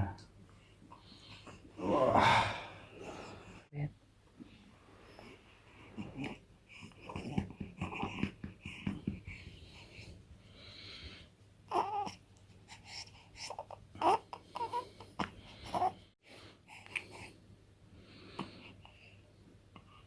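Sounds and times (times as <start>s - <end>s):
newborn baby grunting and whimpering: 1.7s - 2.6s, 5.8s - 8.8s, 11.7s - 16.0s
baby crying: 11.7s - 12.2s, 13.5s - 14.8s.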